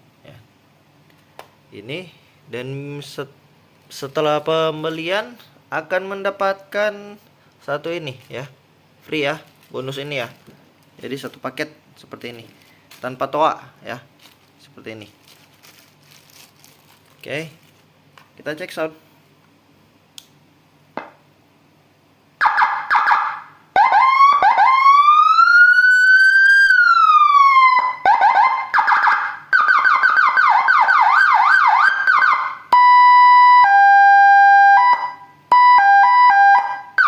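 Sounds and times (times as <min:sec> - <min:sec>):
electronic siren: 0:22.4 - 0:37.0.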